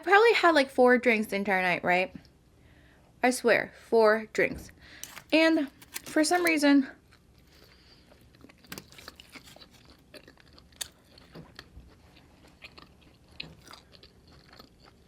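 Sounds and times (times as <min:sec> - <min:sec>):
person chewing food: 0:07.0 - 0:15.0.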